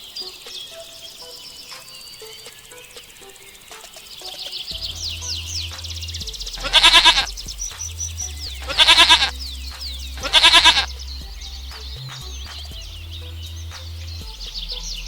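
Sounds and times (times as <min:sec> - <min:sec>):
small birds chirping: 0:00.0 - 0:15.0
goat bleating: 0:06.6 - 0:07.3, 0:08.6 - 0:09.3, 0:10.2 - 0:10.9.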